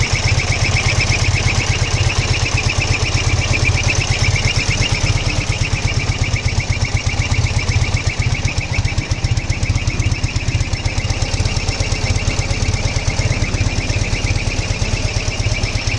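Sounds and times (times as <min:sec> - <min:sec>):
high pulsing whistle: 0:00.0 - 0:15.9
motorcycle engine running: 0:00.0 - 0:15.9.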